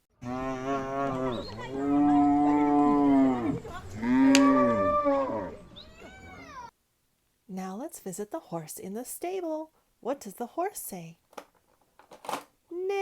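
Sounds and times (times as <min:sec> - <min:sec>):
cow mooing: 0:00.2 - 0:05.7.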